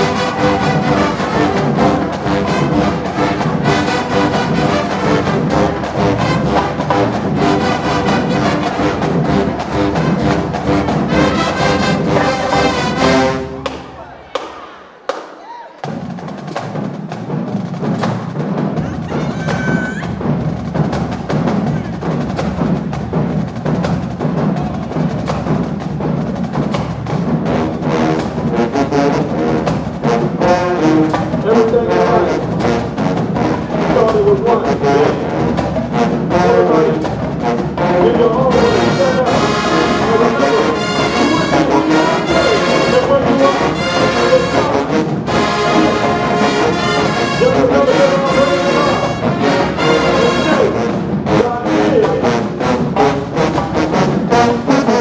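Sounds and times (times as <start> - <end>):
brass horns playing: 0.0 - 15.2, 27.5 - 55.0
drumline beat: 0.0 - 55.0.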